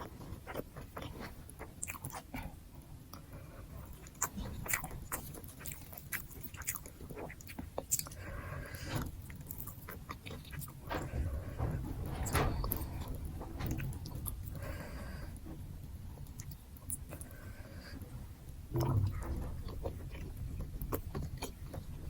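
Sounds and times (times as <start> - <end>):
person chewing food: 0.0 - 11.8, 16.1 - 21.9.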